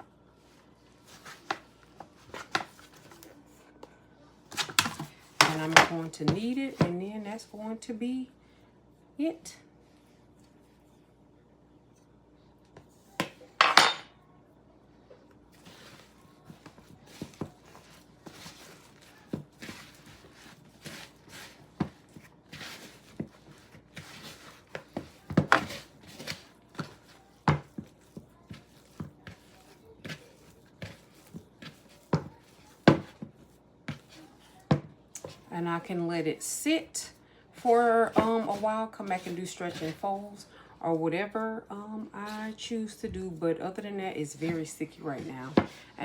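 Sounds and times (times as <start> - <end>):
dough being kneaded by hand: 0.2 - 7.8, 15.0 - 46.0.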